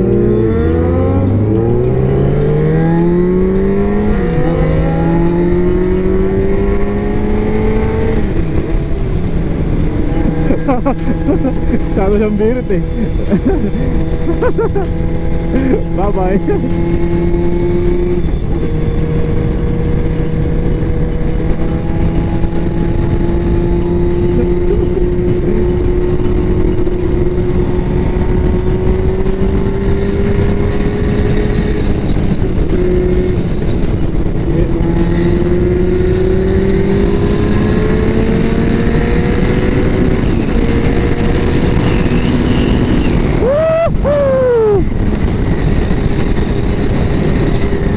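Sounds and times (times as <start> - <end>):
motorcycle engine running: 0.0 - 47.9
wind noise on microphone: 12.4 - 47.9.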